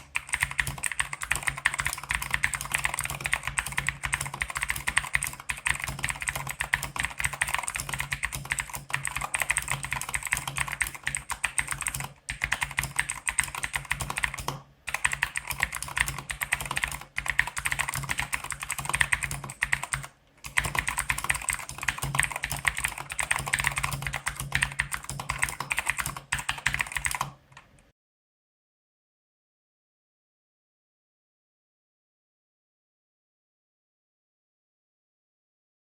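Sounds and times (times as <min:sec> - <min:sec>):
mechanical keyboard typing: 0:00.0 - 0:27.7.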